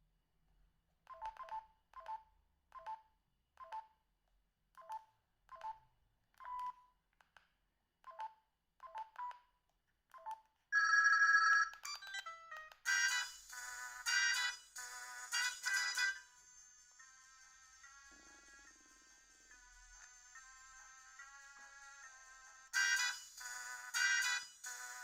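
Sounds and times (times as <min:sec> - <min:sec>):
mobile phone keypress beeps: 0:06.4 - 0:06.8
electronic ringtone tune: 0:10.8 - 0:25.0.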